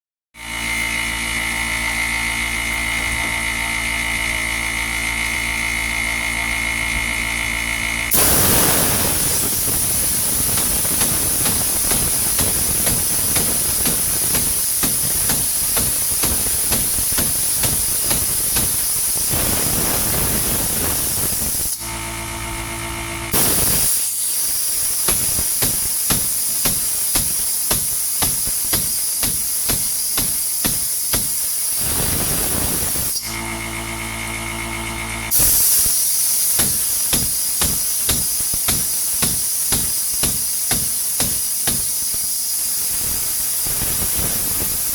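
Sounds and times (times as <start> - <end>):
steady machine hum: 0.4 - 44.9
steady hiss: 8.2 - 21.7, 23.4 - 33.1, 35.4 - 44.9.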